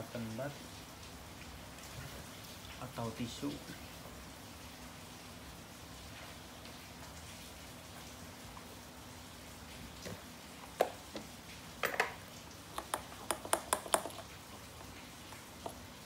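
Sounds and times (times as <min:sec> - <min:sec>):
steady faint hiss: 0:00.0 - 0:16.0
small hard objects clicking: 0:12.8 - 0:14.2.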